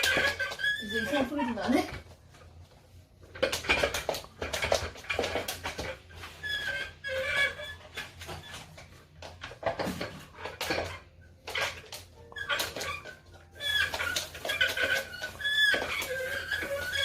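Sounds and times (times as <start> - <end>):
plastic clacks and knocks: 1.7 - 6.2, 8.0 - 17.0.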